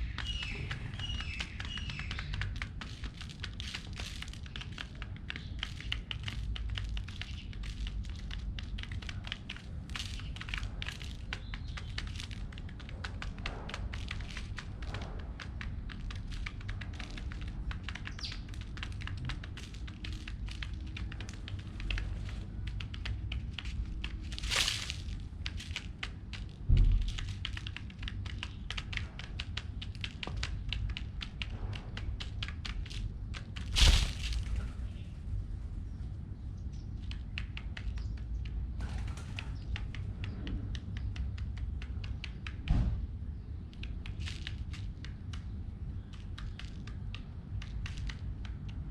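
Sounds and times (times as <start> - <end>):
pigeons pecking at seeds: 0.0 - 48.9
thumps and rustles: 23.6 - 27.6, 33.6 - 34.9.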